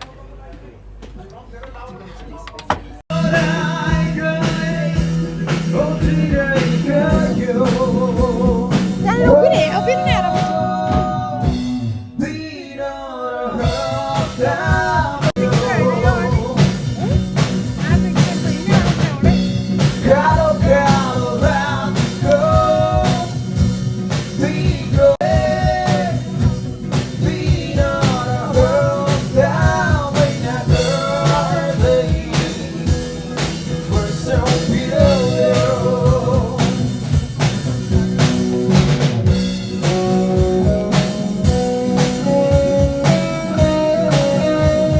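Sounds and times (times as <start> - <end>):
person singing: 3.1 - 11.7, 12.3 - 23.6, 24.2 - 37.1
drum beat: 3.1 - 11.8, 13.6 - 44.9
live band playing: 3.1 - 12.0, 13.6 - 44.9.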